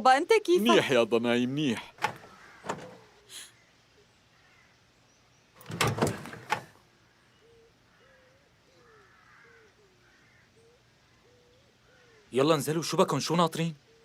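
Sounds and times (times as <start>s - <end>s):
faint birds chirping: 0.0s - 14.0s
door shutting: 2.0s - 3.1s, 5.6s - 6.8s.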